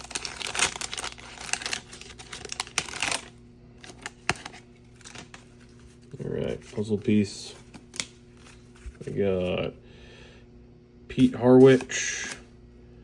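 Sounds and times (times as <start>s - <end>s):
card pack wrapper crinkling: 0.0s - 9.2s, 11.1s - 12.4s
cards clicking and tapping: 3.9s - 5.4s.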